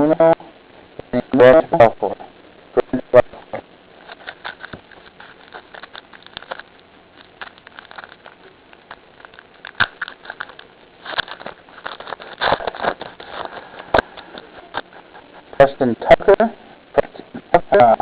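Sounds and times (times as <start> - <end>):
cards rustling and sliding: 4.0 - 15.4.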